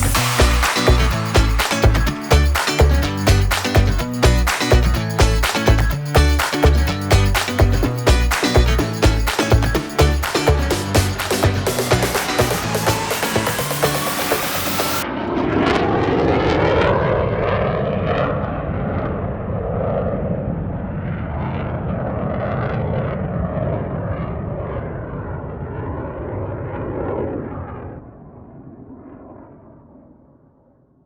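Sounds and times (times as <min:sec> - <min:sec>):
engine-like roar: 0:11.7 - 0:15.0.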